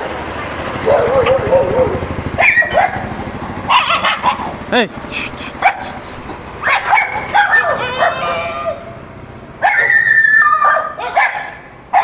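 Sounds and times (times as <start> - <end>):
dogs barking and yelping: 0.5 - 4.7, 5.3 - 12.0
dog whining: 0.8 - 3.1, 5.2 - 9.0, 9.6 - 11.6.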